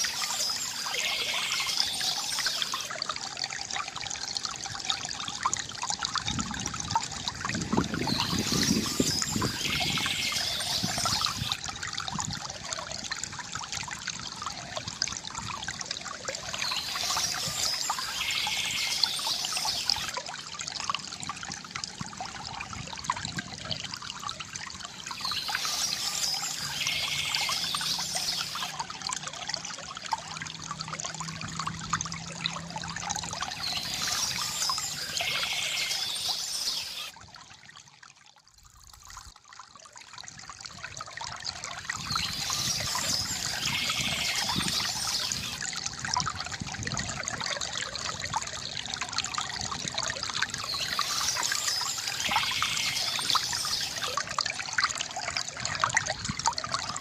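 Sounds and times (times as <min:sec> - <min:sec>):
small stream trickling and splashing: 0:00.0 - 0:57.0.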